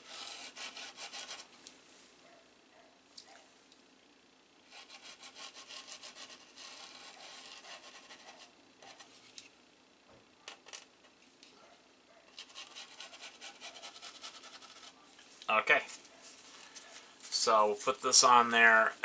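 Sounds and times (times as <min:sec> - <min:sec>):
scrubbing on a circuit board: 0:04.7 - 0:09.1, 0:12.4 - 0:15.0.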